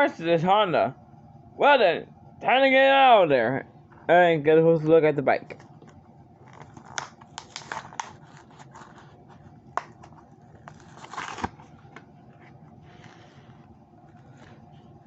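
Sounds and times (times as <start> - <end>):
plastic and cardboard packaging crackling: 5.8 - 13.6
crinkling rustle: 6.4 - 13.5.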